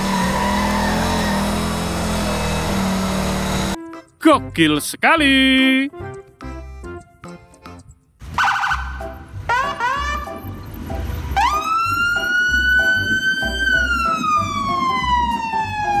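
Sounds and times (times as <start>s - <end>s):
siren wailing and whooping: 0.0s - 2.6s, 11.4s - 16.0s
background music with beat: 3.8s - 4.5s, 5.2s - 8.2s.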